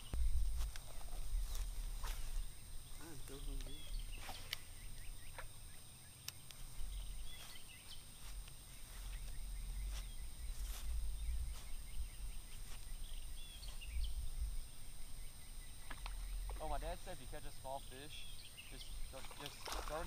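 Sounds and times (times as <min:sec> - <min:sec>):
wind rumble on microphone: 0:00.0 - 0:05.2, 0:08.4 - 0:16.6
bird chirps: 0:00.0 - 0:20.0.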